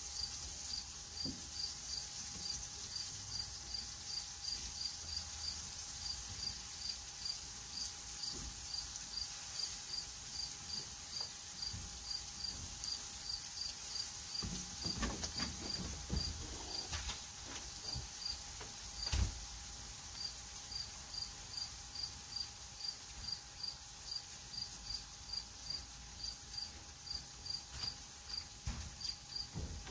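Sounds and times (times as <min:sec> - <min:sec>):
high insect hiss: 0:00.0 - 0:29.8
knocks and clatters: 0:14.4 - 0:18.1, 0:28.7 - 0:29.9.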